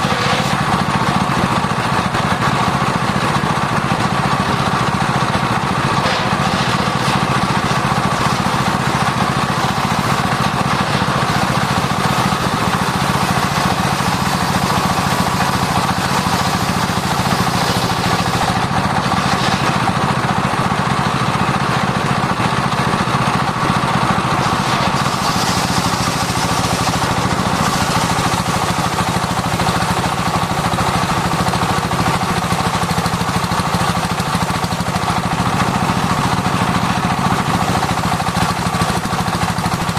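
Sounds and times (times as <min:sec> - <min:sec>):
circular saw cutting wood: 0:00.0 - 0:03.4, 0:04.0 - 0:20.6, 0:23.5 - 0:39.9
machine hum: 0:23.3 - 0:32.5.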